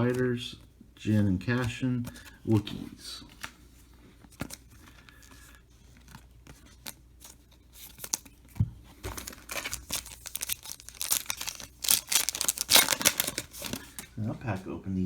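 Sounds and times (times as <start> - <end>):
wrapper crinkling and tearing: 9.1 - 14.1.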